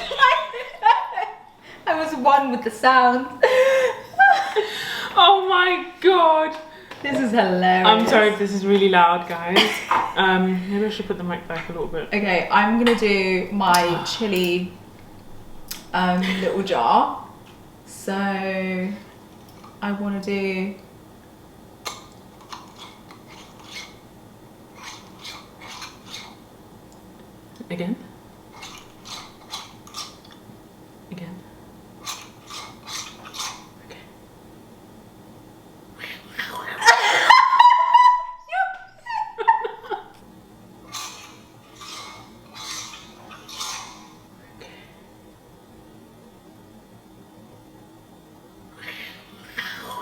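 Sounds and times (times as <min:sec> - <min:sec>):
jar top grating: 0:21.9 - 0:24.0, 0:24.7 - 0:26.4, 0:32.1 - 0:33.7, 0:40.9 - 0:44.2.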